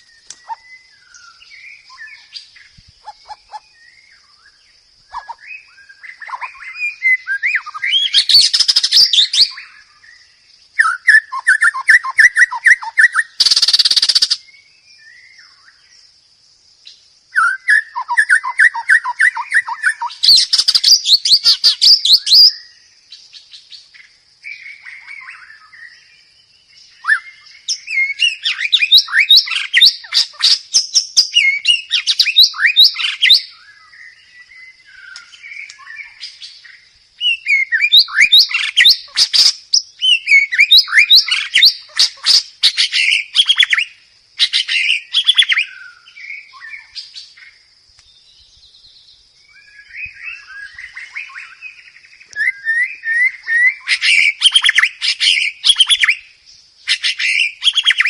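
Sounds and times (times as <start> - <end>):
bird singing trilled phrases: 0.0 - 58.0
harsh buzzy bird call: 10.8 - 14.4.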